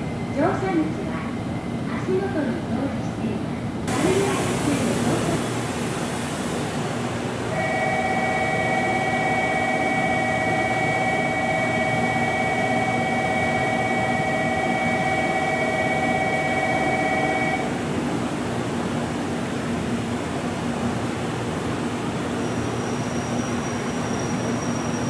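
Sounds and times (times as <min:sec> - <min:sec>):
train humming at platform: 0:00.0 - 0:25.0
two-tone departure bell: 0:07.6 - 0:17.7.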